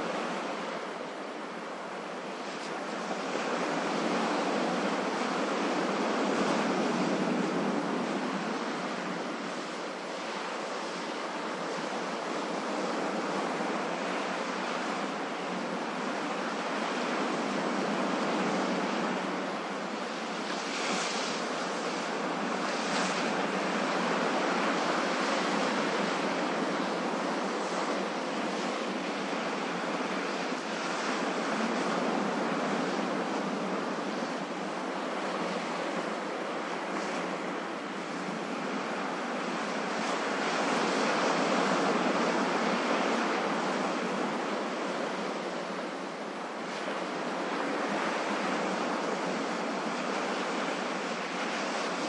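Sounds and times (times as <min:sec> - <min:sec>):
ocean waves breaking: 0:00.0 - 0:52.0.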